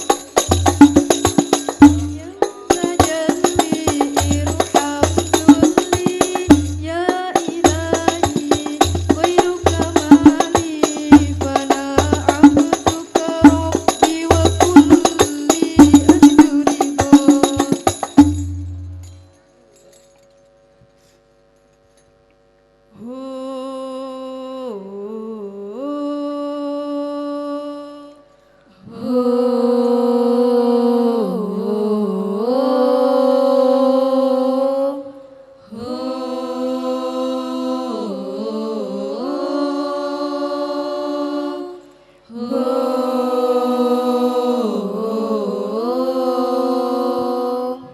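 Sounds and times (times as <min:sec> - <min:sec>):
person singing unaccompanied: 0:00.0 - 0:19.0, 0:22.9 - 0:47.9
rapid frame drum strikes: 0:00.0 - 0:19.3.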